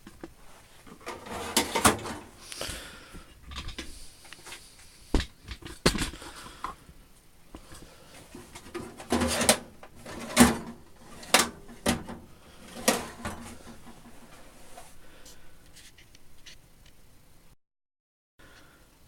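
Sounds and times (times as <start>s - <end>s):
tool box drawers sliding and knocking: 0.5s - 2.4s, 8.2s - 15.0s.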